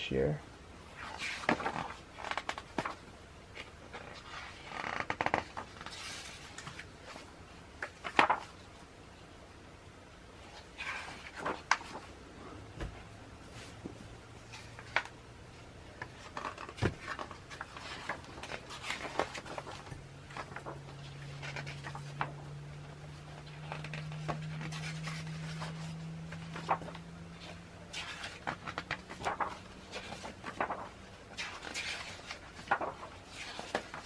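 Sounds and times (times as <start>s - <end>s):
paper and card rustling: 0.9s - 8.8s, 10.4s - 34.0s
low steady hum: 5.4s - 34.0s.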